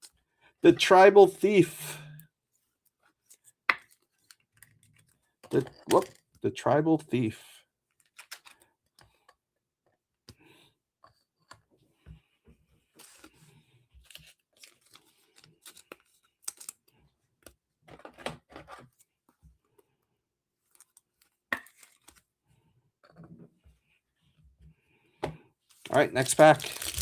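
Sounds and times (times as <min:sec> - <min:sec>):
trading cards clicking and rustling: 0:26.0 - 0:27.0
foil wrappers being torn: 0:26.2 - 0:27.0.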